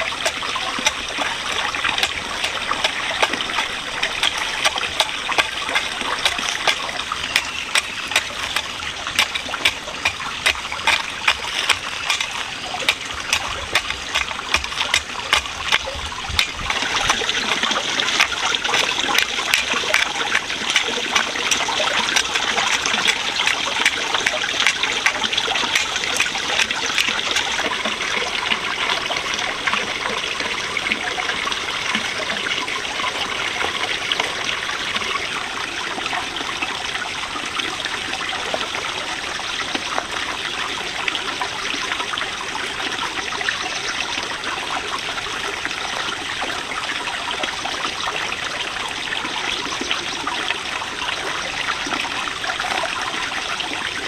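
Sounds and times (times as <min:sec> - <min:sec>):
water trickling and splashing: 0:00.0 - 0:54.0.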